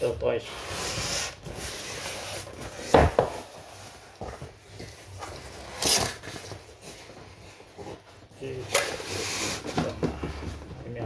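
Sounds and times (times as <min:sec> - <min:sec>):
rubbing and scraping on a box: 0:00.0 - 0:11.0
knocks on a box: 0:02.9 - 0:03.4.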